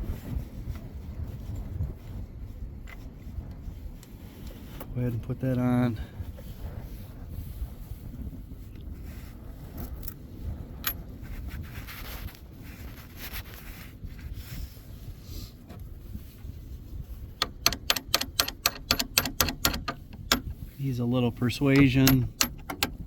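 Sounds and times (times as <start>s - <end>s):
scraping on battery terminal: 17.1s - 23.0s
ratchet wrench clicking: 17.4s - 20.6s, 21.6s - 23.0s
sharp click: 17.5s - 20.5s.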